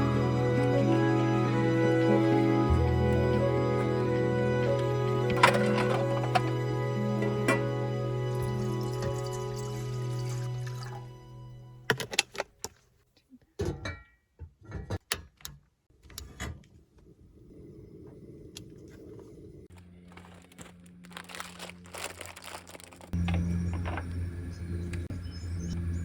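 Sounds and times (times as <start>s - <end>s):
camp cooking gear clattering: 5.3s - 6.6s.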